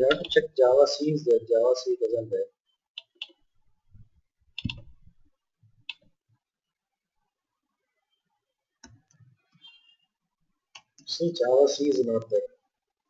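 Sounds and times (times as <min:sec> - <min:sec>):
clicks with dull thumps: 0:00.0 - 0:00.4, 0:04.0 - 0:05.1.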